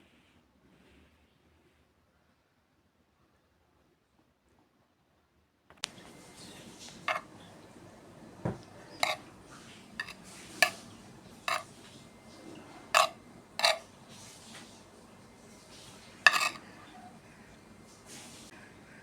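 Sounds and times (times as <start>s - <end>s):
cutlery clinking against a plate: 7.0s - 7.3s, 9.0s - 9.2s, 10.0s - 10.8s, 11.5s - 11.7s, 13.0s - 13.8s, 16.3s - 16.7s.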